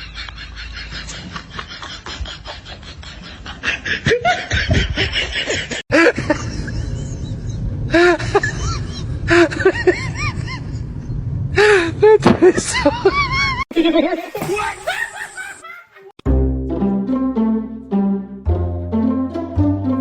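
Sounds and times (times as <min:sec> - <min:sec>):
high-pitched laughter-like vocal sounds: 0:12.6 - 0:16.2.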